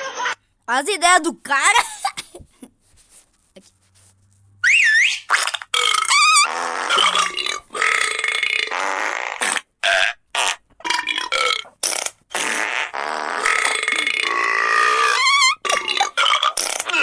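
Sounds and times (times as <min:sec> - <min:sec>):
person speaking: 0:00.7 - 0:02.7, 0:07.0 - 0:08.1
loud burps: 0:05.6 - 0:17.0.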